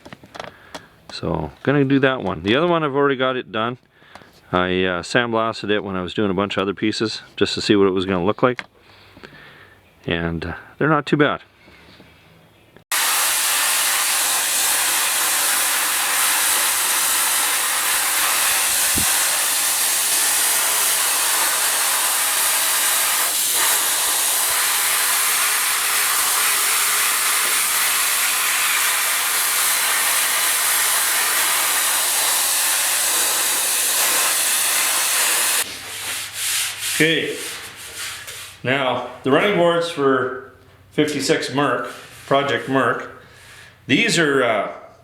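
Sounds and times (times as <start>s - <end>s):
sandblaster hissing: 12.9s - 35.7s.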